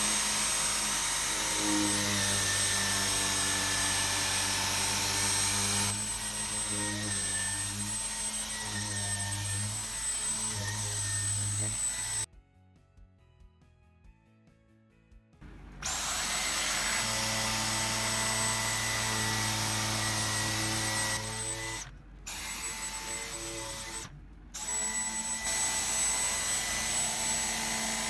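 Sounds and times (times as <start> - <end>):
vacuum cleaner running: 0.0 - 12.3.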